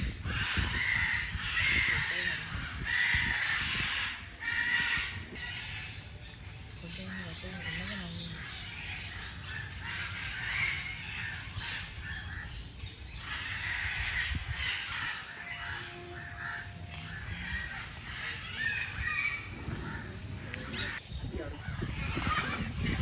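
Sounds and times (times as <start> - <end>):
birds squawking and chirping: 0.0 - 23.0
low rumble: 8.7 - 23.0.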